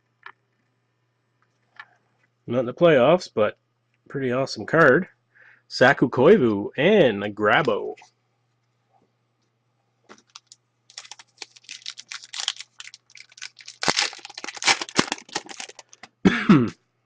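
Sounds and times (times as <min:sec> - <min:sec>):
card wrapper crinkling: 0:10.1 - 0:16.2.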